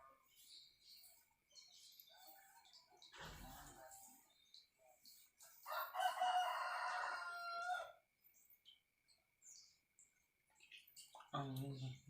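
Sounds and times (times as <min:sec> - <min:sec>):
rooster crowing: 0:05.7 - 0:08.0.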